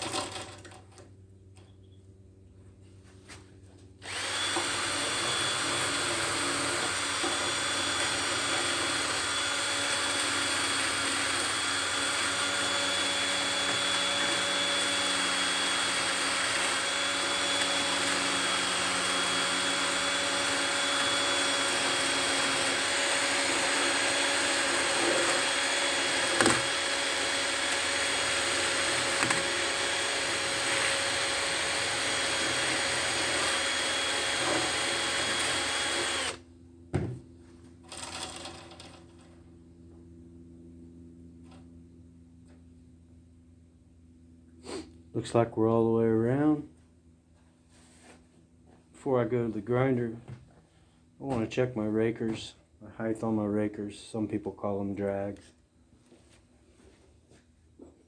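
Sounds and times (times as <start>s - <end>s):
drill spinning wire brush on chain: 4.0s - 36.4s, 37.8s - 39.4s.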